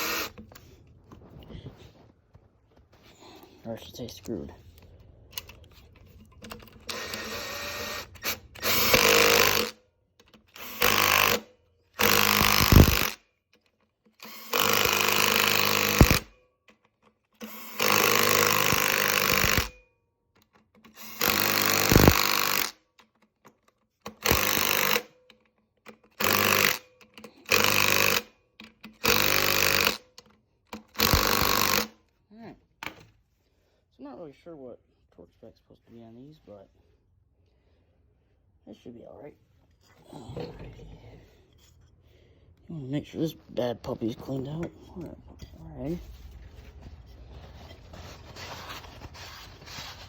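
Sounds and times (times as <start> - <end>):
power driver running bolts: 6.4 - 13.2, 14.2 - 16.3, 17.4 - 19.7, 20.8 - 22.7, 25.9 - 32.0.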